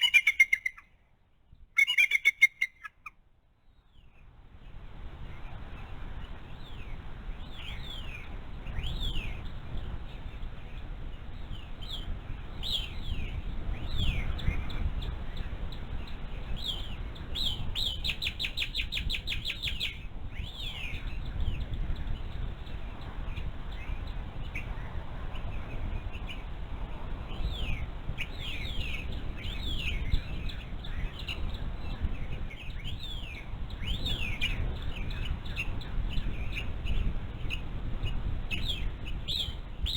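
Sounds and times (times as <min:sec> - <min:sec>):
bird trill: 0:00.0 - 0:01.0, 0:01.8 - 0:03.1
birds chirping: 0:00.0 - 0:01.0, 0:01.8 - 0:03.1.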